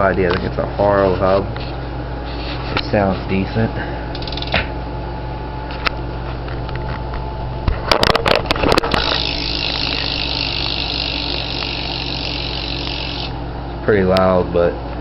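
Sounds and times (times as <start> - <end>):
bicycle hub ratchet buzzing: 4.1 - 4.7, 8.4 - 13.5.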